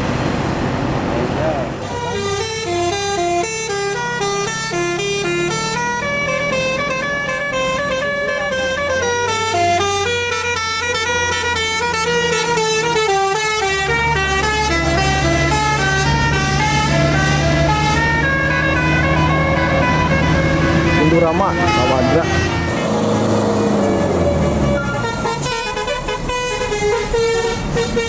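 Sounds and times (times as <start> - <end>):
bus engine humming: 0.0 - 28.0
multi-tone bus horn melody: 1.8 - 28.0.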